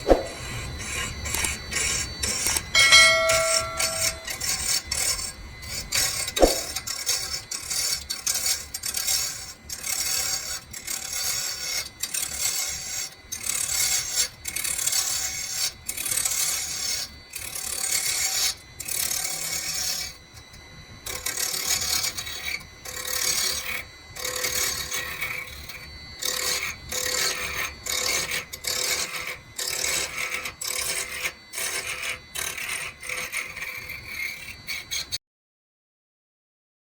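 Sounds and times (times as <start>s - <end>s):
hand sanding wood: 0.0s - 1.1s, 6.4s - 6.8s
brief metallic ring: 2.8s - 4.5s, 6.4s - 6.8s
sharp click: 6.4s - 6.8s.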